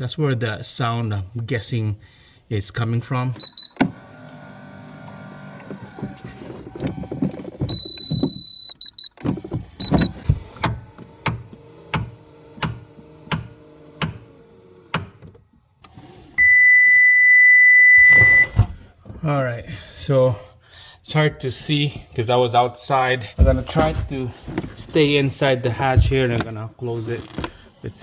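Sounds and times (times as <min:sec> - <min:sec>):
liftgate motor running: 0:03.5 - 0:07.8, 0:09.2 - 0:16.4.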